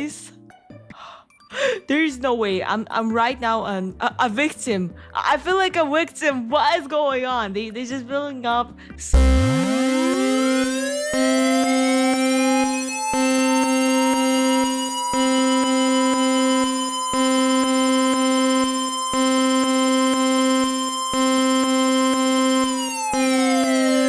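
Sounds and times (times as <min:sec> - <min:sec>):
pulsing low alert tone: 0:09.2 - 0:24.0
siren-like whine: 0:09.2 - 0:24.0
steady high tone: 0:09.2 - 0:24.0.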